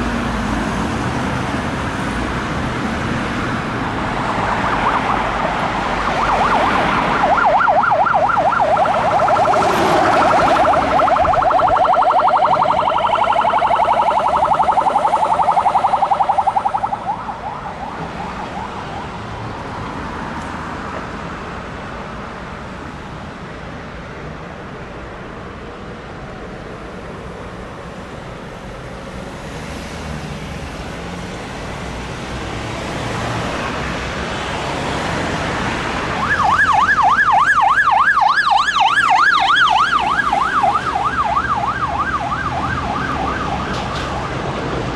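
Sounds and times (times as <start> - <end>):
road traffic noise: 0.0 - 44.9
emergency siren warbling: 4.0 - 19.4, 35.6 - 44.6
siren sweeping up and down: 4.1 - 19.4, 35.8 - 44.5.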